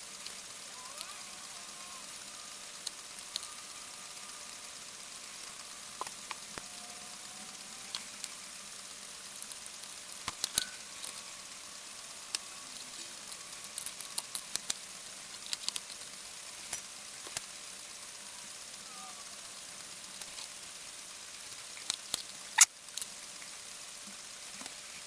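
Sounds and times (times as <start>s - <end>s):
steady background hiss: 0.0s - 25.0s
small clicks and taps of tools: 10.2s - 11.2s, 15.4s - 16.0s, 21.8s - 23.5s, 24.1s - 24.8s.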